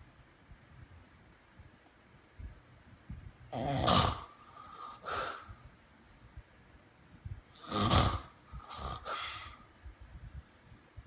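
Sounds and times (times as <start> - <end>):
loud rough snore: 3.5 - 5.3, 7.5 - 9.6.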